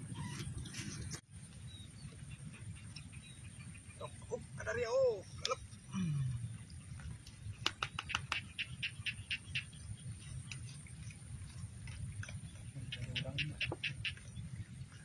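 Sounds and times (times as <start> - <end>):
small animal rapid clicking call: 6.9 - 14.5.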